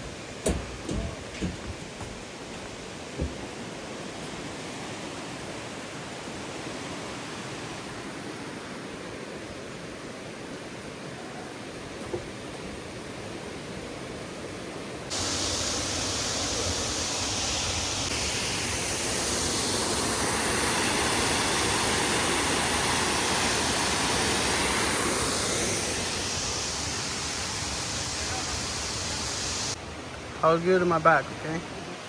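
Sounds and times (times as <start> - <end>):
waterfall rushing: 15.1 - 32.0.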